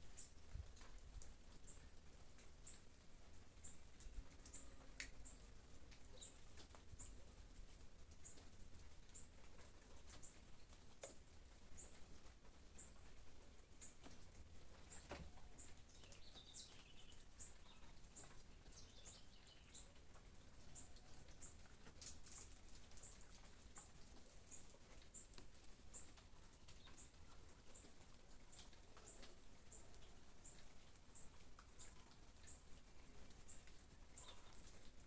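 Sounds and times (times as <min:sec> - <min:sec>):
bird chirps: 0:15.6 - 0:20.0.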